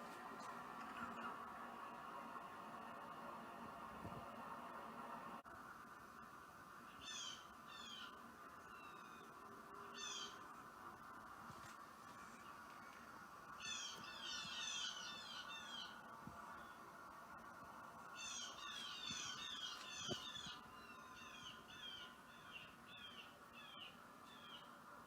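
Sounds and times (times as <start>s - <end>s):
faint steady hum: 0.0s - 25.0s
songbird chirping: 6.7s - 25.0s.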